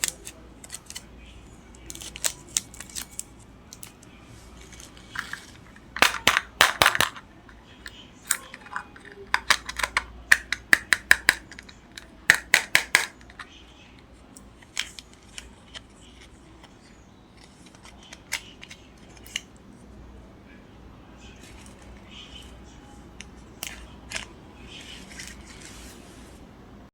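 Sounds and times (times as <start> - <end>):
candy packaging crackling: 0.0 - 19.5.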